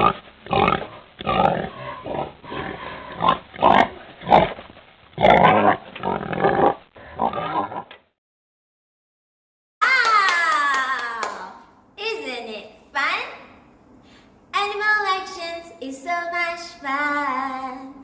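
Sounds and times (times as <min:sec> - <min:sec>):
pig grunting and oinking: 0:00.0 - 0:04.6, 0:05.2 - 0:08.0.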